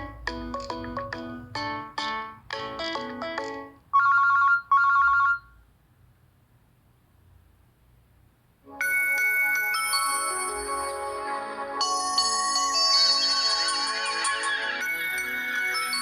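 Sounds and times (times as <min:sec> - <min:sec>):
melodic electronic ringtone: 0:00.0 - 0:05.5, 0:08.8 - 0:16.0
bright chime-like ringtone: 0:08.8 - 0:11.2, 0:11.8 - 0:16.0.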